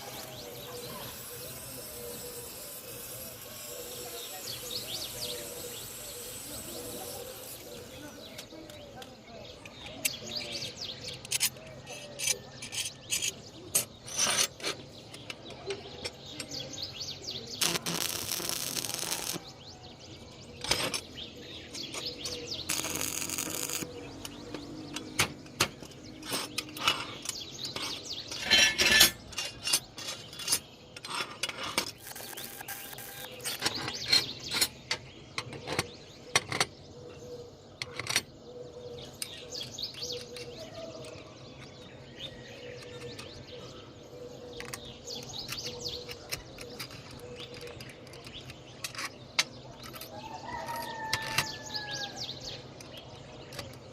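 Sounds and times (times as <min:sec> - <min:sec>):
metallic clinks of steel parts: 0:24.5 - 0:35.8
metal clatter: 0:25.1 - 0:32.2.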